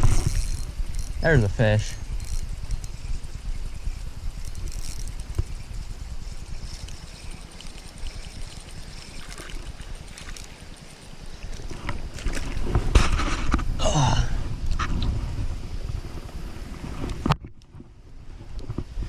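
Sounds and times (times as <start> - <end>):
rustling rushing noise: 0.0 - 13.8
running creek water: 0.0 - 14.8
wind buffeting microphone: 0.0 - 19.0.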